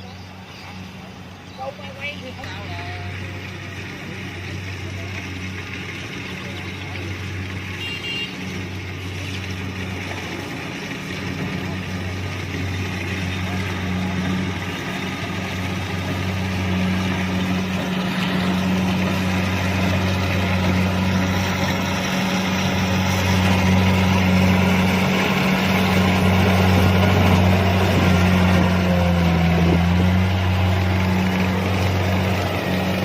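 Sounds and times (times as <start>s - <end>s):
diesel engine humming: 0.0s - 33.0s
machinery rushing noise: 0.2s - 33.0s.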